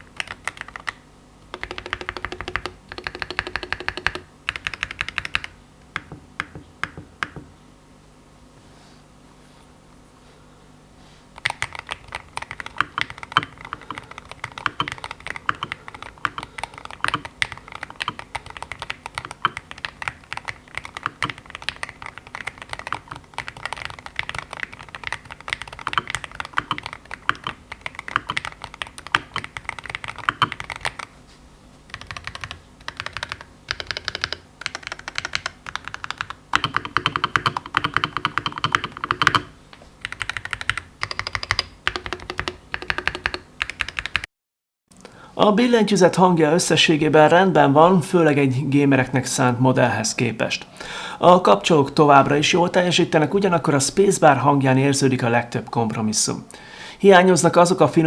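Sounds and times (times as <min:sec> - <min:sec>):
keyboard typing clatter: 0:00.0 - 0:07.5, 0:11.4 - 0:31.1, 0:31.9 - 0:44.3.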